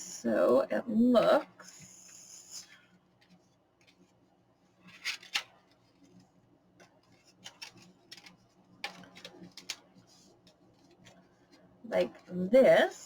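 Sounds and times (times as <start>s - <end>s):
paper rustling and crinkling: 4.8s - 11.7s.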